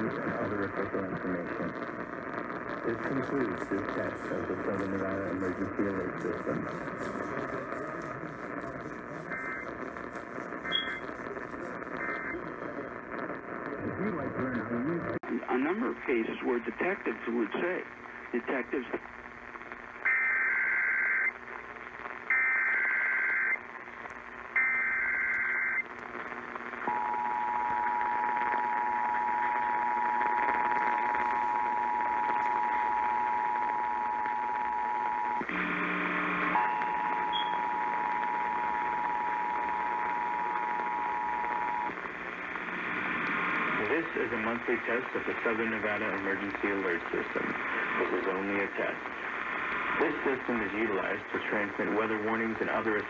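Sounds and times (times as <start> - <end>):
buzzy warbling data bursts: 2.8 - 12.9
two-tone attention signal: 10.6 - 11.1, 36.6 - 37.7.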